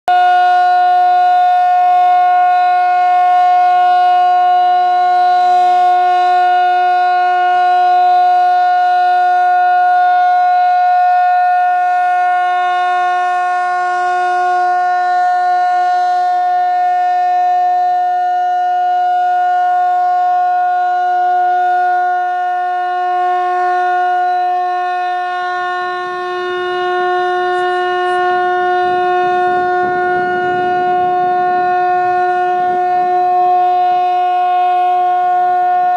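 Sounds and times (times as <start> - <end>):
fire siren wailing: 0.0 - 35.9
low rumbling noise: 25.8 - 34.4.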